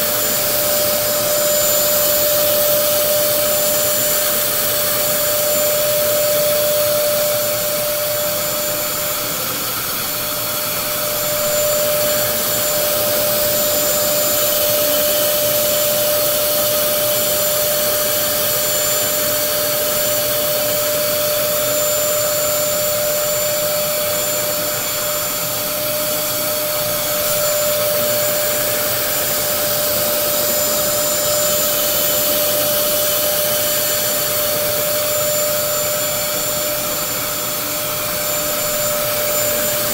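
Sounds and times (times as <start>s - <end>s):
carpet cleaner motor whine: 0.0s - 39.9s.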